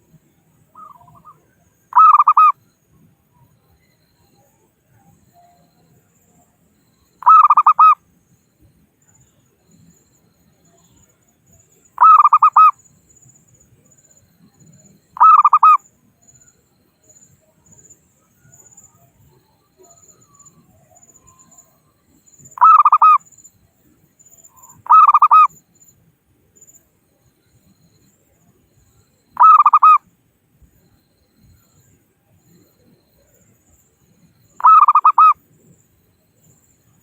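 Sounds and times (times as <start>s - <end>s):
dove cooing: 1.9s - 2.5s, 7.2s - 8.0s, 12.0s - 12.7s, 15.2s - 15.8s, 22.6s - 23.2s, 24.9s - 25.5s, 29.4s - 30.0s, 34.6s - 35.4s.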